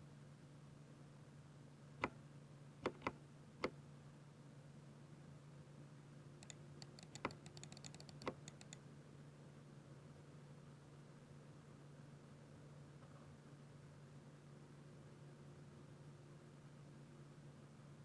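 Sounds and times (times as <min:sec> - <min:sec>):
mechanical keyboard typing: 0:02.8 - 0:03.2, 0:06.4 - 0:08.8.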